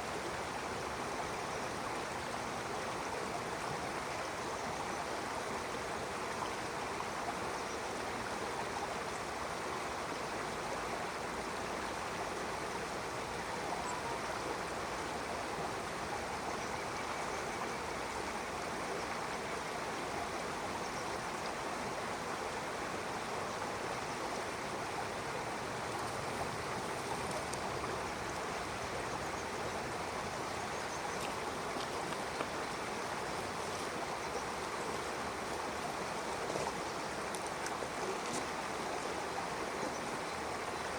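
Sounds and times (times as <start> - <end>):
stream water rushing: 0.0 - 40.9.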